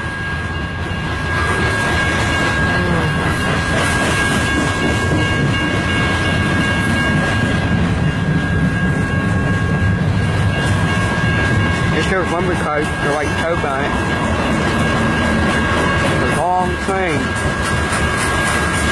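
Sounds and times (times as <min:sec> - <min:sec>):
freight train rumbling past: 0:00.0 - 0:18.9
wheels clacking over rails: 0:10.4 - 0:18.9.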